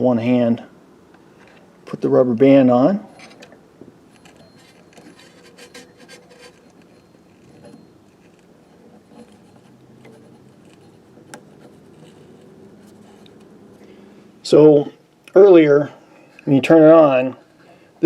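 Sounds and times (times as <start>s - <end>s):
rubber band clicking and rubbing: 10.0s - 12.4s.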